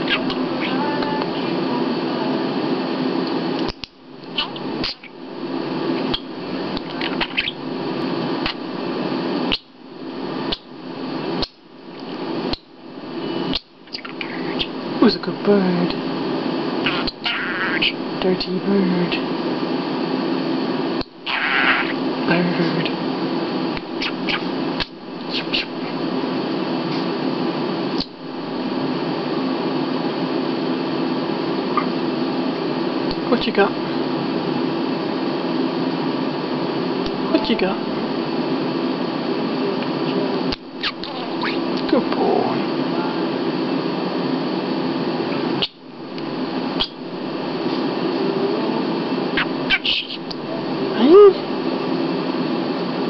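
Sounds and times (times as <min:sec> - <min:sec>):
faint budgerigar chirp: 0:00.0 - 0:01.0, 0:03.7 - 0:05.2, 0:06.0 - 0:07.6, 0:09.5 - 0:09.7, 0:12.5 - 0:14.8, 0:16.8 - 0:18.0, 0:21.0 - 0:22.0, 0:23.8 - 0:26.0, 0:40.8 - 0:41.7, 0:45.6 - 0:45.8, 0:46.8 - 0:47.0, 0:49.4 - 0:50.3
fan-like room hum: 0:00.0 - 0:53.0
budgerigar chirping: 0:06.1 - 0:07.6, 0:16.8 - 0:18.0, 0:23.8 - 0:25.8, 0:49.4 - 0:50.2.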